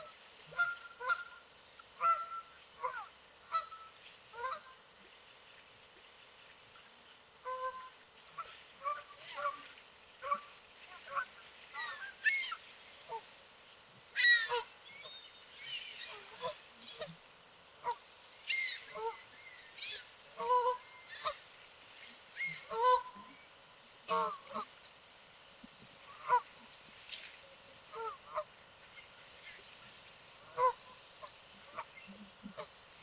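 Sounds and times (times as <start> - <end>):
geese honking: 0.0 - 4.8, 7.4 - 13.2, 14.2 - 14.7, 17.8 - 21.5, 22.4 - 23.3, 24.1 - 24.7, 26.1 - 26.6, 30.4 - 32.8.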